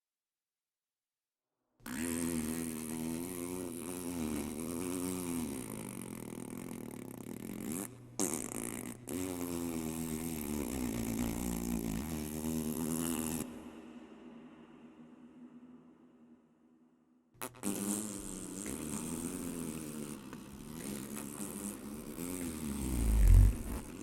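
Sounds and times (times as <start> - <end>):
deep hum: 22.8 - 23.9
low trumpet-like drone: 22.8 - 23.9.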